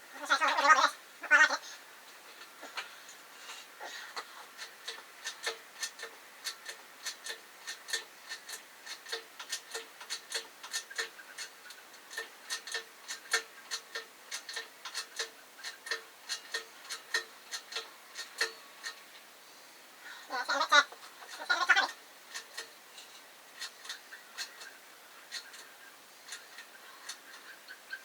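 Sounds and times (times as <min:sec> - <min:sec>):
sharp regular clicking: 0:04.2 - 0:19.1, 0:21.0 - 0:28.0.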